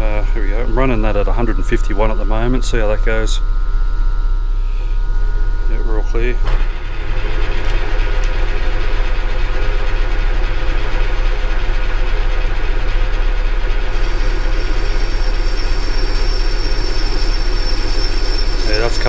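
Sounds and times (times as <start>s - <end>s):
thin high whine: 0.0s - 7.9s, 13.9s - 19.0s
lathe machine hum: 0.0s - 19.0s.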